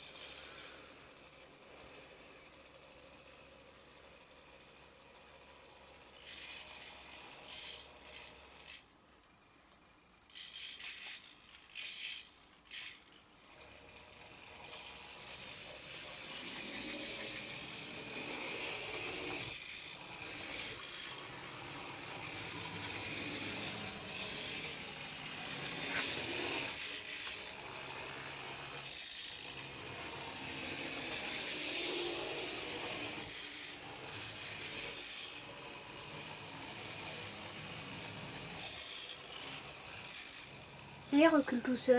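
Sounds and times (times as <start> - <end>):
small motors and gears whirring: 0.0 - 41.9.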